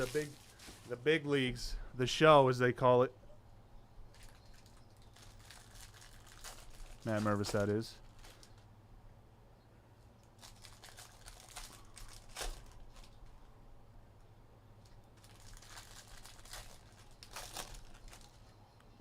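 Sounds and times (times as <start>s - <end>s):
card wrappers crinkling: 0.0s - 1.0s, 4.1s - 8.7s, 10.3s - 13.5s, 14.8s - 18.5s.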